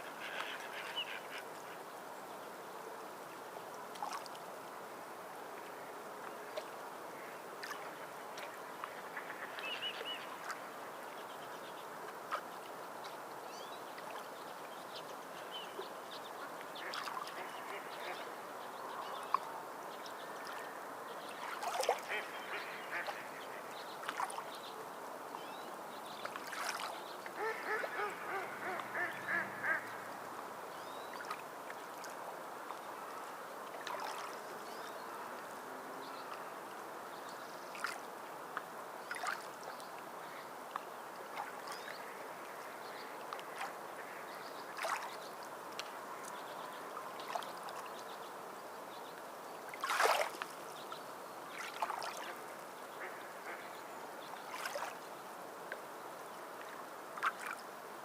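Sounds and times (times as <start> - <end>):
water noise: 0.0 - 58.0
short splashes: 21.4 - 22.2, 49.8 - 50.5
birds calling: 27.3 - 30.2
quacking calls: 27.4 - 30.1.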